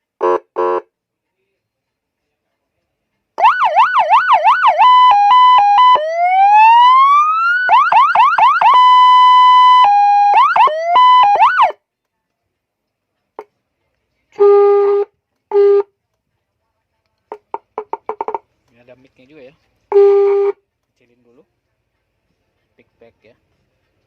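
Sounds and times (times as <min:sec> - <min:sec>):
police siren: 0:03.4 - 0:11.8.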